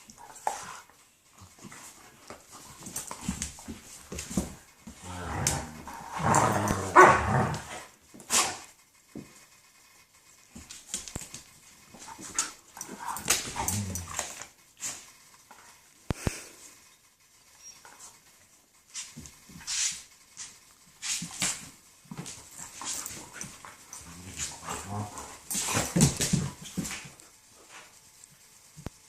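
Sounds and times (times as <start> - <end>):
dogs growling whining and barking: 4.9 - 8.0, 12.4 - 14.4, 22.8 - 26.3.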